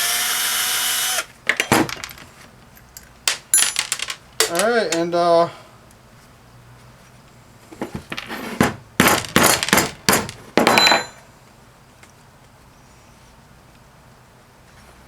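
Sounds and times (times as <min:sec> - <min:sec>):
metallic clanks and knocks: 0:07.8 - 0:11.2.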